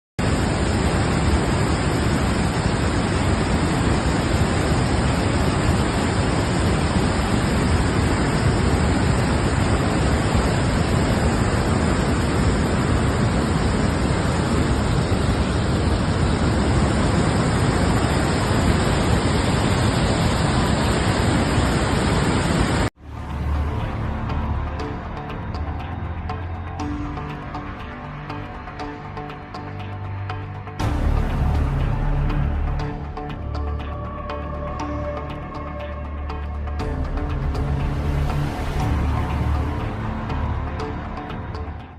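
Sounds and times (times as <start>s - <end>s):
music: 0.2s - 16.8s, 23.0s - 41.9s
rushing floodwater roar: 0.2s - 25.3s, 36.3s - 41.7s.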